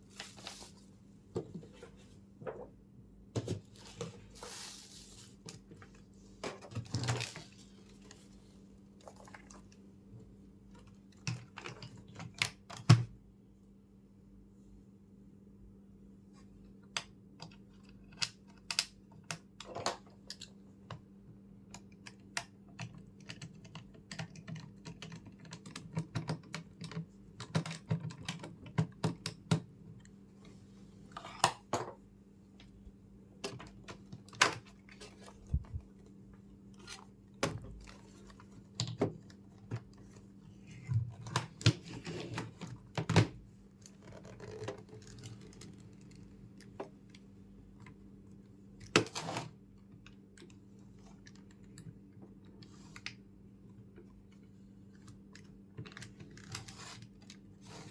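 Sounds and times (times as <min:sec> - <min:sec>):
faint low hum: 0:29.5 - 0:48.9.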